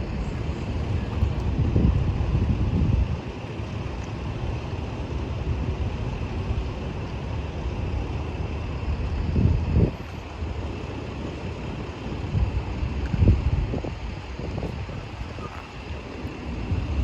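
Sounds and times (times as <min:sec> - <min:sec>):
wind buffeting microphone: 0:00.0 - 0:03.9, 0:07.7 - 0:17.0
low vehicle rumble: 0:00.0 - 0:17.0.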